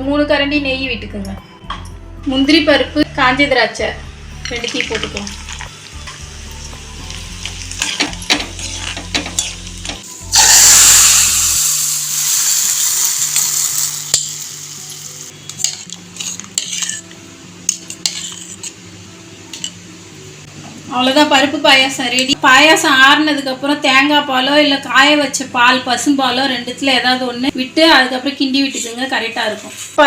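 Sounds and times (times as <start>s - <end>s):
nuts frying in ghee: 4.5s - 17.0s
metal spoon clinking on pan: 7.8s - 10.0s
loud burst of sizzling: 10.0s - 15.6s.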